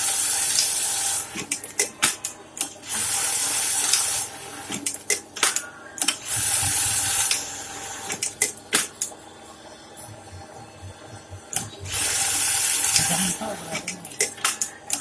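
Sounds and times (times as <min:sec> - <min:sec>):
sharp clicks and taps: 0:10.0 - 0:15.0.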